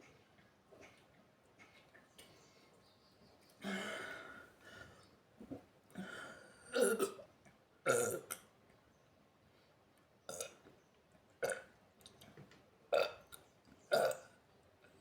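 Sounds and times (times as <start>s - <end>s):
woman burping: 6.7s - 7.2s.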